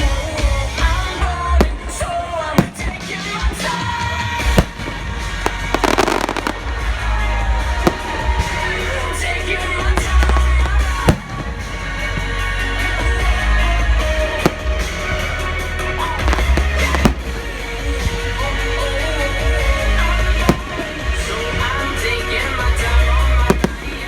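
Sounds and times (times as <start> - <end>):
fireworks bursting: 0.0 - 24.0
loud music with heavy bass: 0.0 - 24.0.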